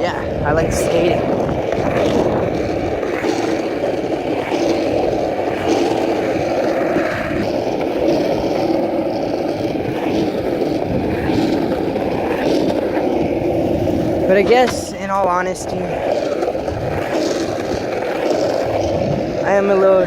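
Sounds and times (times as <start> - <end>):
skateboard wheels rolling on pavement: 0.0 - 20.0.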